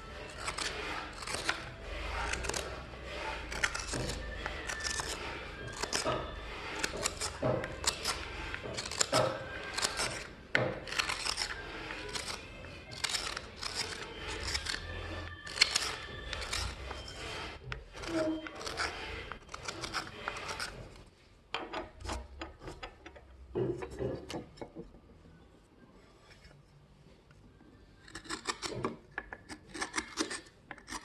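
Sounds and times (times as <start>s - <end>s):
blade rasping on buffing wheel: 0.0s - 10.2s.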